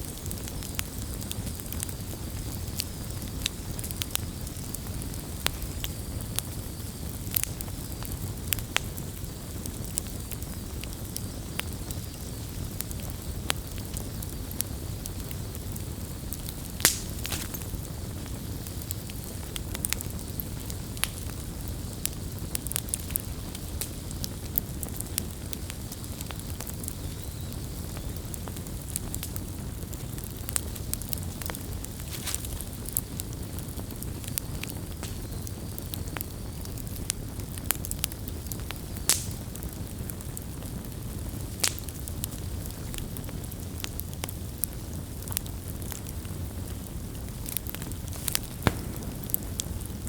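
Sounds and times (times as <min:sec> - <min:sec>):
campfire flames rumbling: 0:00.0 - 0:50.0
fire crackling and popping: 0:00.0 - 0:50.0.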